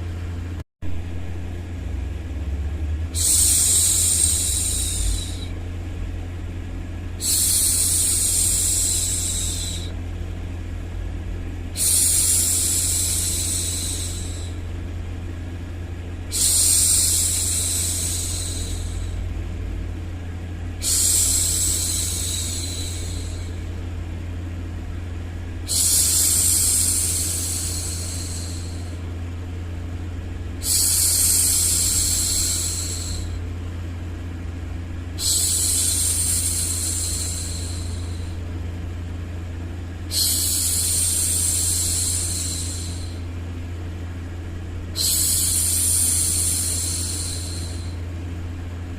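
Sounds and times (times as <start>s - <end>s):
low white-noise rumble: 0.0s - 48.9s
woman shushing: 3.2s - 5.5s, 7.2s - 9.9s, 11.8s - 14.6s, 16.3s - 19.3s, 20.8s - 23.6s, 25.7s - 29.0s, 30.6s - 33.4s, 35.2s - 38.4s, 40.1s - 43.3s, 45.0s - 48.0s.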